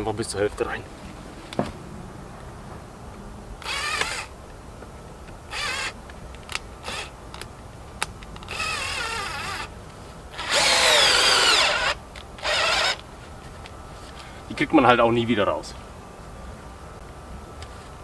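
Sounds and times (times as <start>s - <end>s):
power drill driving screws: 3.6s - 4.3s, 5.5s - 6.0s, 8.5s - 9.7s, 10.3s - 13.0s.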